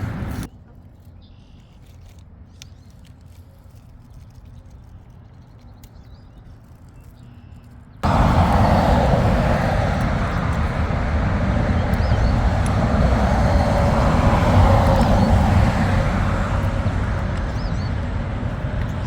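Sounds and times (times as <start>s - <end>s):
airplane passing low overhead: 0.0s - 0.5s, 8.0s - 19.0s
low outdoor rumble: 0.0s - 0.5s, 8.0s - 19.0s.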